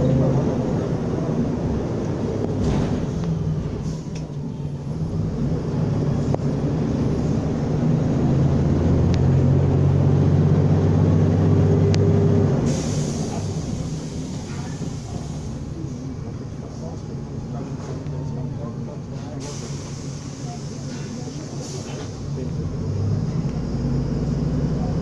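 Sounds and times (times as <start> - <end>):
bus diesel engine pulling: 0.0 - 25.0.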